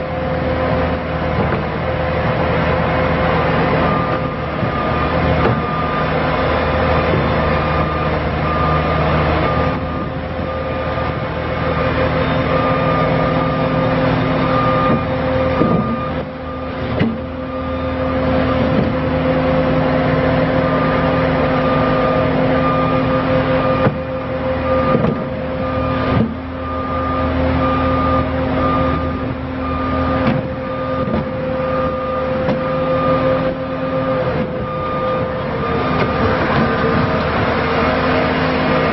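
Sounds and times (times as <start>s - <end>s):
diesel engine running: 0.0s - 38.9s
backup alarm beeping: 3.8s - 19.2s, 20.4s - 37.2s
machine clunks: 4.1s - 5.8s, 14.7s - 16.3s, 16.9s - 17.3s, 24.8s - 25.4s, 30.2s - 31.4s, 34.3s - 37.4s.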